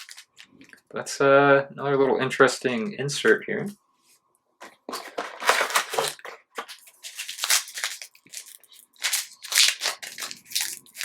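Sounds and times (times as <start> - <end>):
plastic wrapper crinkling: 0.0 - 0.8, 4.9 - 11.0.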